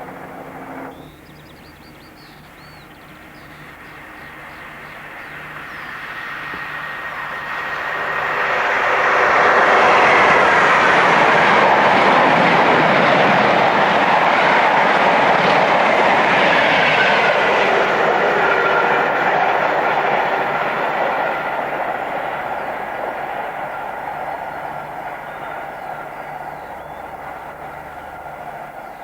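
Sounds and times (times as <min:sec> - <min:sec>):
train wheels clattering: 0:00.0 - 0:29.0
train whine: 0:00.0 - 0:29.0.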